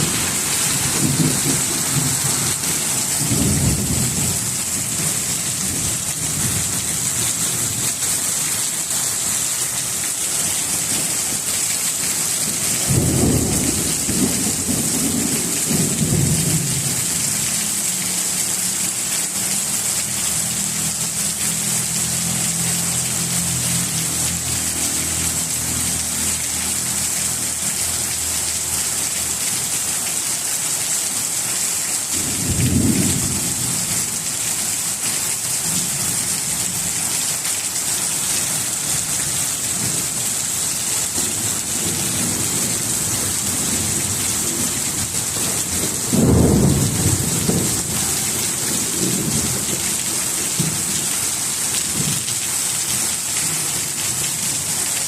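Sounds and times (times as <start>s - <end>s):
thunder rumbling: 0.0s - 6.7s, 41.8s - 49.9s
heavy rain: 0.0s - 55.0s.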